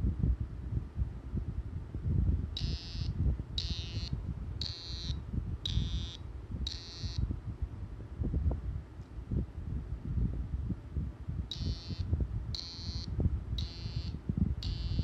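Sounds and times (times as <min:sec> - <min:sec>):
phone vibrating buzz: 0:02.6 - 0:07.3, 0:11.5 - 0:15.0.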